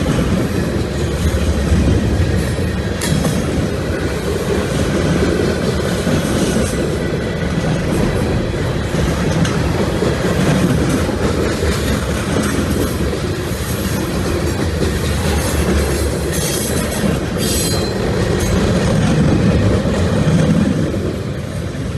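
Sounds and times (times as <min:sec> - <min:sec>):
train wheels rumbling on rails: 0:00.0 - 0:21.9.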